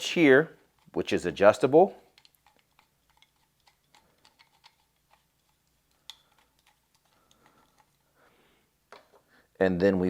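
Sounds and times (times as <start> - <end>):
plastic toy pieces clicking: 2.1 - 7.9.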